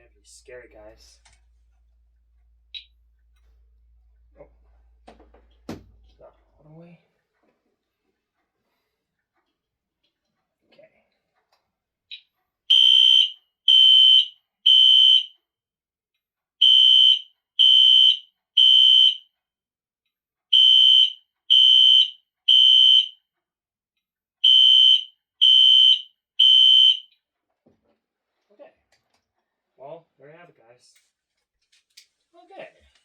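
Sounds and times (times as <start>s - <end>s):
fire alarm horn beeping: 12.7s - 15.4s, 16.6s - 19.3s, 20.5s - 23.2s, 24.4s - 27.2s.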